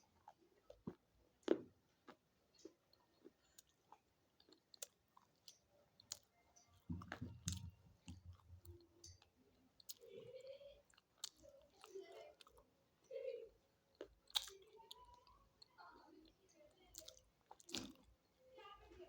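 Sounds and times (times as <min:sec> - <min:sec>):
chewing slate pencil crunching: 0:00.0 - 0:06.8, 0:10.9 - 0:12.7, 0:13.9 - 0:18.2.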